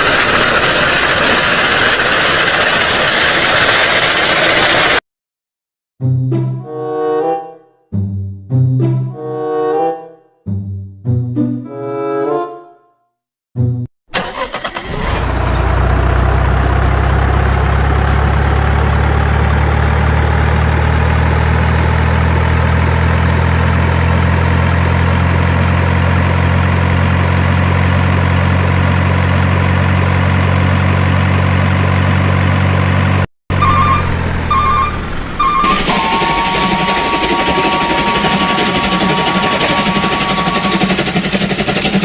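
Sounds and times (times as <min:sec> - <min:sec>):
engine cranking and idling: 0:00.0 - 0:05.0, 0:14.1 - 0:42.0.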